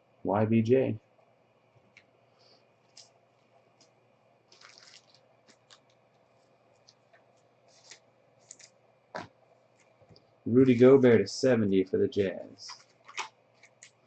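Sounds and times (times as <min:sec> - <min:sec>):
trading cards rustling and ticking: 0:02.8 - 0:08.8, 0:12.6 - 0:14.0.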